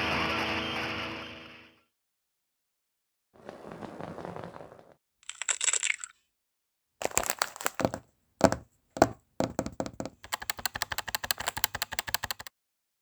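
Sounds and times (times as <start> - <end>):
crackling clicks: 5.2 - 6.2, 7.0 - 12.5
fast even ticking: 7.8 - 12.5.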